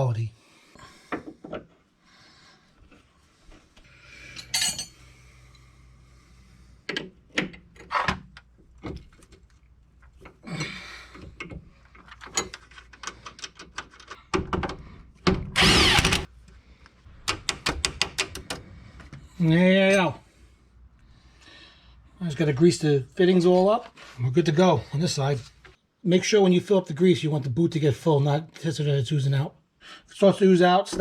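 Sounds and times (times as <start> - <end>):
power tool burst: 15.6 - 16.3.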